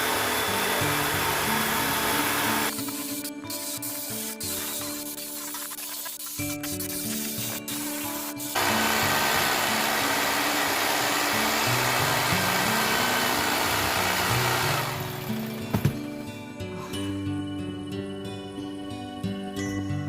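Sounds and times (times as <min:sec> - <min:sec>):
power tool cutting wood: 0:00.0 - 0:02.9, 0:08.5 - 0:15.9
background music: 0:00.0 - 0:20.0.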